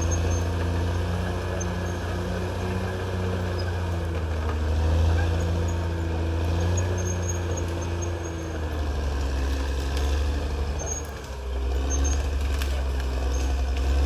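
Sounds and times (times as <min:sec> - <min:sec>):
bulldozer diesel engine running: 0:00.0 - 0:14.0.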